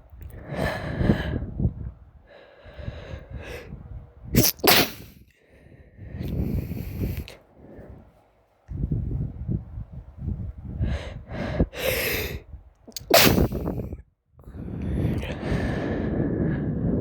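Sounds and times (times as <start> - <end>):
person sneezing: 4.4 - 5.2, 13.0 - 13.8
gasping inhales: 10.8 - 12.4, 14.6 - 16.7.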